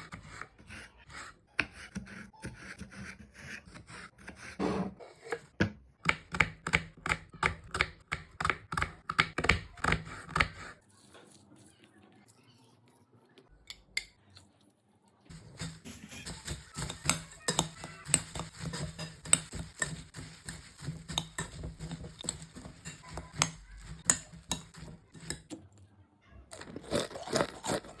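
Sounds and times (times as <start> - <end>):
kitchen utensils clattering: 15.3 - 25.5.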